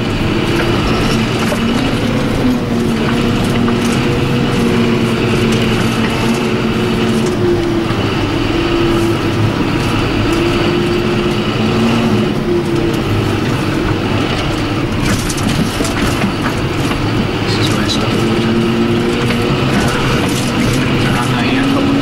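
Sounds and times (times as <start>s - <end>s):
road and drive noise: 0.0s - 22.0s
tractor diesel engine running: 0.0s - 22.0s.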